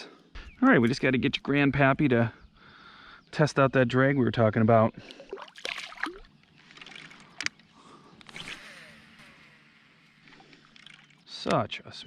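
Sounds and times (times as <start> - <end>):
fishing line whirring off spool: 8.2 - 11.3.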